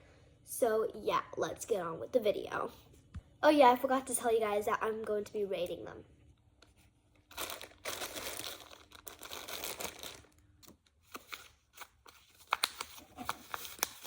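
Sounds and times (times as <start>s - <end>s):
paper crinkling: 7.3s - 14.0s.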